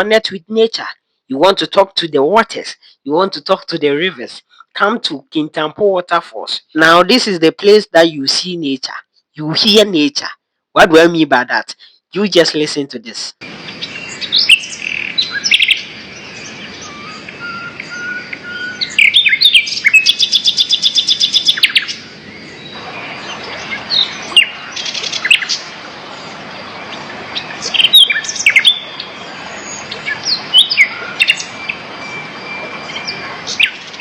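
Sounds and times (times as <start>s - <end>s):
birds chirping and calling: 13.4s - 34.0s
fast repeated bird trill: 13.6s - 34.0s
waterfall rushing: 21.6s - 34.0s.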